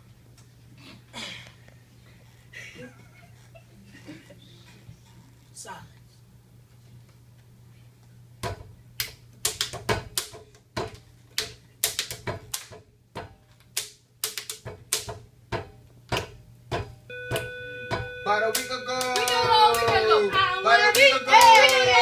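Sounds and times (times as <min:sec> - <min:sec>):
claps snaps and clicks: 0:09.0 - 0:10.4, 0:11.4 - 0:12.8, 0:13.6 - 0:15.2, 0:17.3 - 0:20.1
steady held tone: 0:17.1 - 0:22.0.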